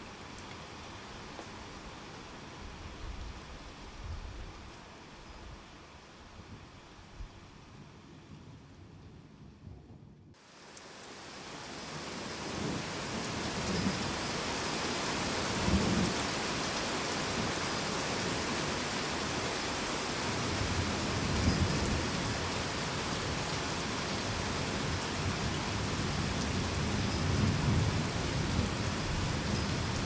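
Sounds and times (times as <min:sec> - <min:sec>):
heavy rain falling: 0:10.4 - 0:30.0.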